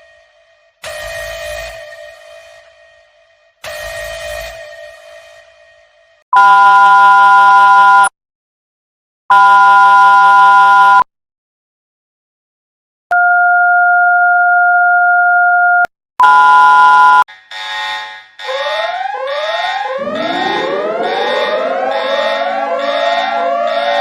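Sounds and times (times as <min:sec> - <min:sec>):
steady two-tone beep: 0:14.2 - 0:17.3
siren winding up: 0:16.3 - 0:24.0
harsh electronic alert chord: 0:17.5 - 0:24.0
rising whoop sweeps: 0:19.1 - 0:24.0.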